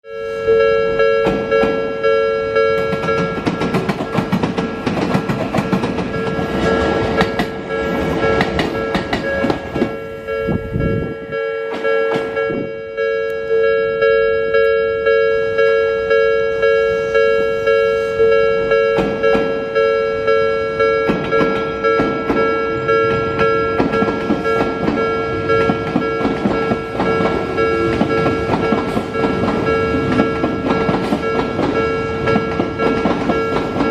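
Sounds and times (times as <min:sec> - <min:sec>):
level-crossing warning bell: 0:00.0 - 0:33.9
train wheels clattering over rail joints: 0:02.8 - 0:10.1, 0:21.0 - 0:33.9.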